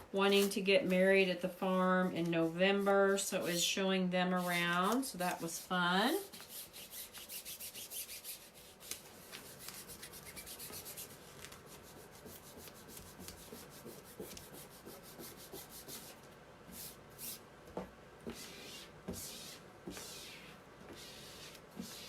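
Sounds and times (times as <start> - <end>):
scratchy hand rubbing strokes: 1.7 - 3.8, 4.4 - 16.2, 18.3 - 22.0.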